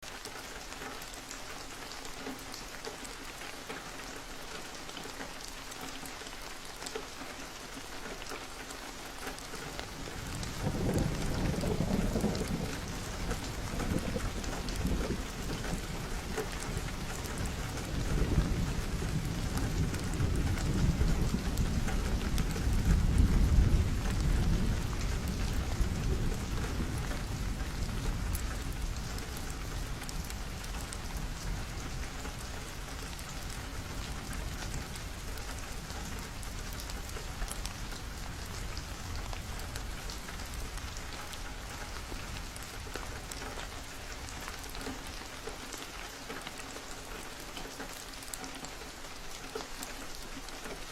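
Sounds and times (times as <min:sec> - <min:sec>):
rain falling on a window: 0:00.0 - 0:50.9
low rumble of thunder: 0:09.6 - 0:45.2.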